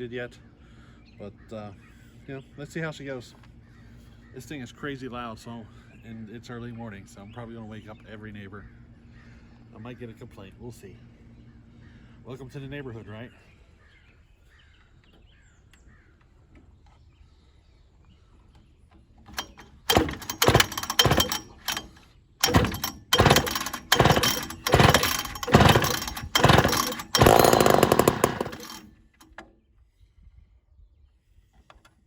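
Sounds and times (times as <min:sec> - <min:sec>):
chainsaw engine firing in bursts: 0:19.3 - 0:29.4.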